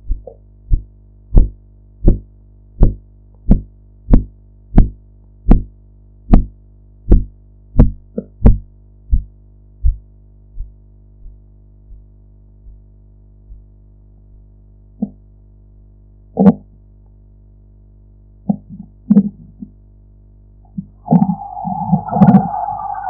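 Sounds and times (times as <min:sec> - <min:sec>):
faint pulse thumps: 0:00.0 - 0:13.8, 0:20.7 - 0:23.0
low hum: 0:00.0 - 0:23.0
steady tone: 0:20.6 - 0:23.0.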